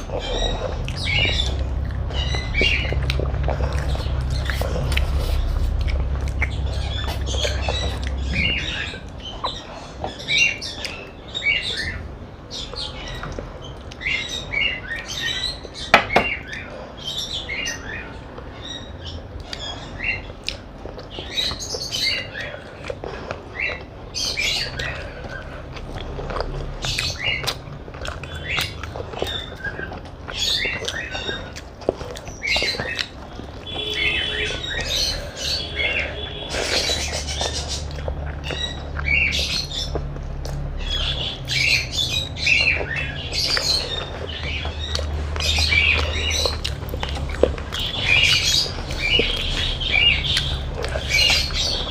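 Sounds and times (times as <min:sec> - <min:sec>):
wet chewing and smacking: 0:00.0 - 0:12.1, 0:17.8 - 0:51.9.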